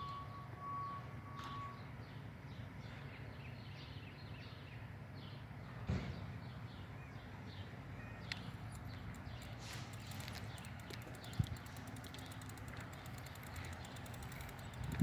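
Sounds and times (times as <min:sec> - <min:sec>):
thump: 0:05.9 - 0:06.3
small birds chirping: 0:06.4 - 0:15.0.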